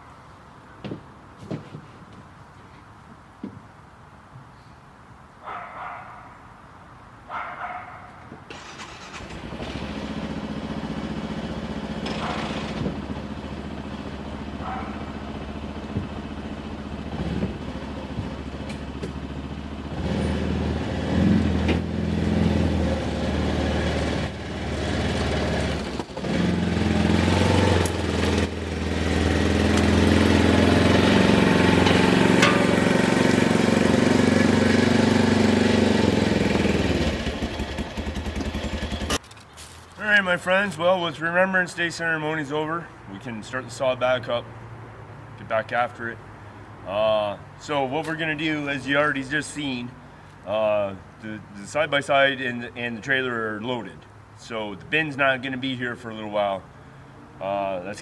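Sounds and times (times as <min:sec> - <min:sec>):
knocks and clunks: 0:00.8 - 0:02.3, 0:15.7 - 0:19.3, 0:27.8 - 0:34.0
utility vehicle engine running: 0:08.5 - 0:39.4.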